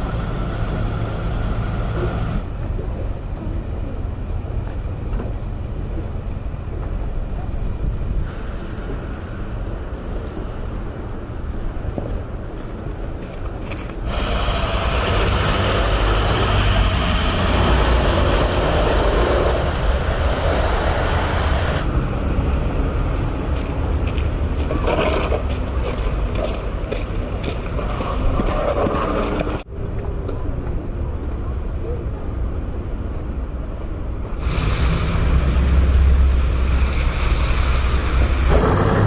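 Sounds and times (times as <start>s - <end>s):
low traffic rumble: 0.0s - 39.0s
vehicle passing with hiss: 14.0s - 24.0s, 34.4s - 39.0s.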